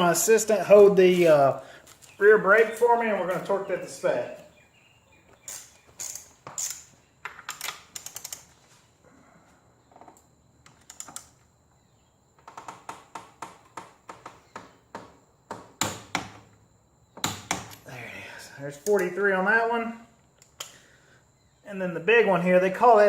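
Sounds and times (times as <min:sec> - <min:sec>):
torque wrench ratcheting clicks: 0:07.5 - 0:08.4.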